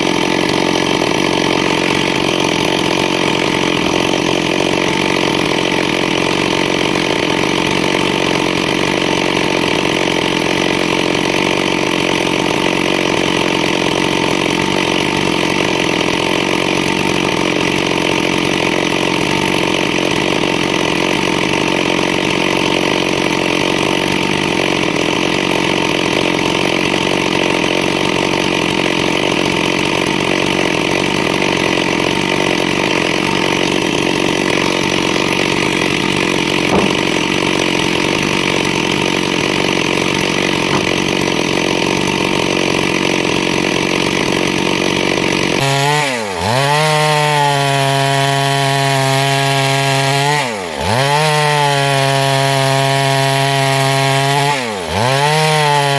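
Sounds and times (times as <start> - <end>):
chainsaw engine running: 0.0 - 55.9.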